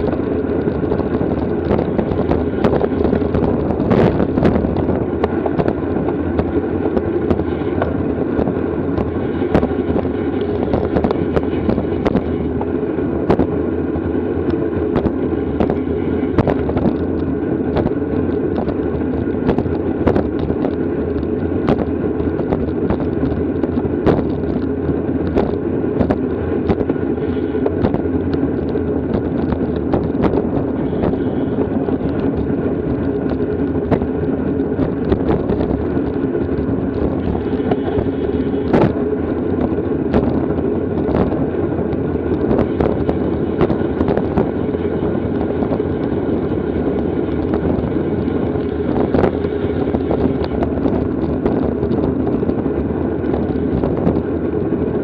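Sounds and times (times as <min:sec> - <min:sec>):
bicycle rattling clicks and knocks: 0:00.0 - 0:13.6
bicycle road noise: 0:00.0 - 0:55.0
rushing wind: 0:00.0 - 0:55.0.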